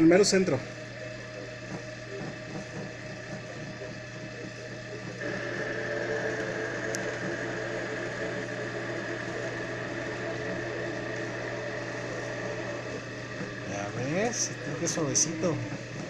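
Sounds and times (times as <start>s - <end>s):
drill press drilling wood: 5.2s - 16.0s.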